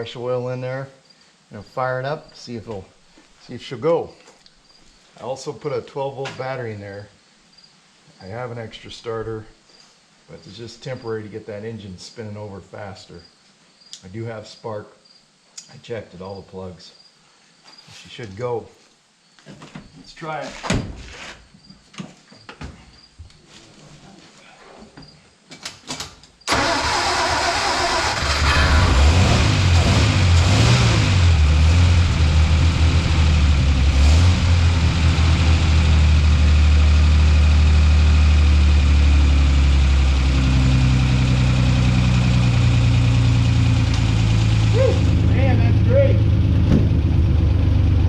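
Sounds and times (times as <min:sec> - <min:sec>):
car engine idling: 0:26.5 - 0:48.0
car engine starting and revving: 0:26.5 - 0:48.0.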